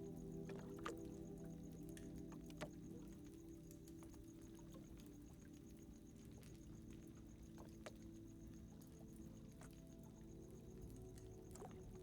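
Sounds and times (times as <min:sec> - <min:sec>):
ambient music drone: 0:00.0 - 0:05.2.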